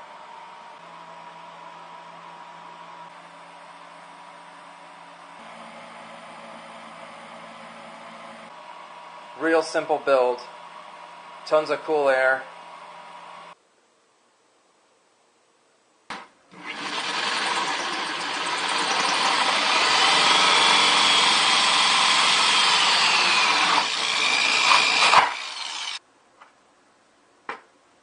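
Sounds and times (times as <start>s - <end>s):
power drill boring through plastic: 16.5s - 26.0s.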